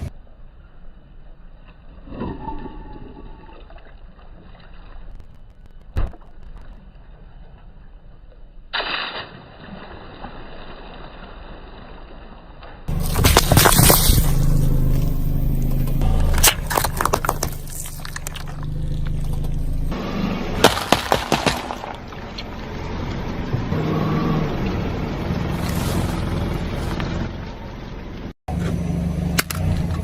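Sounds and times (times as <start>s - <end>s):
objects cracking and crunching: 12.9s - 15.1s, 15.7s - 19.7s, 20.6s - 22.5s
vehicle engine running: 12.9s - 30.0s.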